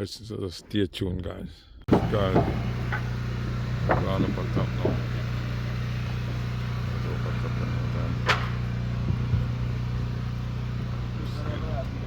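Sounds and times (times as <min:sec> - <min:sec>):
sharp knocks: 0:01.9 - 0:05.5
low mechanical hum: 0:01.9 - 0:12.0.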